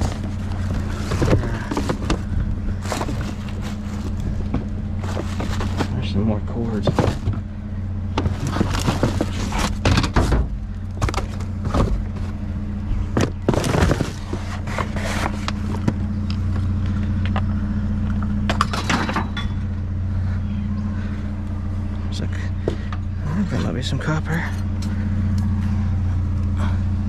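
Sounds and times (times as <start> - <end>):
junk clanking in metal dumpster: 0.0 - 7.5, 8.1 - 12.4, 18.5 - 19.7
steady low hum: 0.0 - 27.0.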